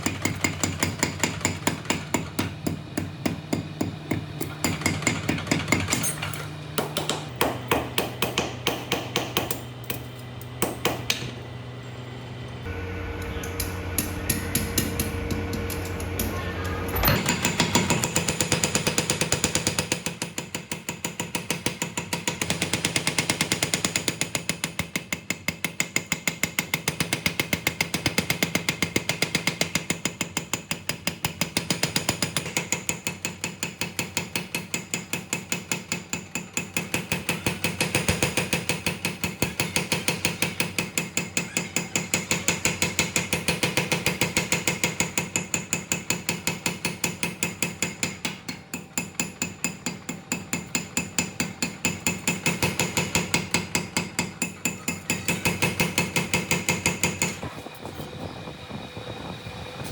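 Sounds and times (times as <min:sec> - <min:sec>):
hammer striking steel: 0:00.0 - 0:11.4, 0:13.4 - 0:19.2.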